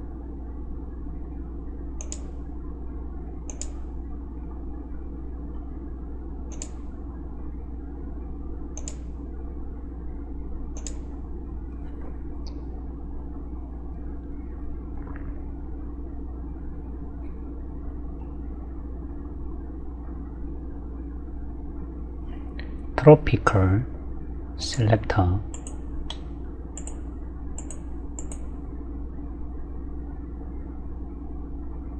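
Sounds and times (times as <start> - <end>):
low electrical hum: 0.0 - 31.9
mouse clicks: 2.0 - 2.3, 3.5 - 3.8, 6.5 - 6.8, 8.8 - 9.1, 10.8 - 11.0, 25.5 - 26.2, 26.8 - 27.0, 27.6 - 28.5.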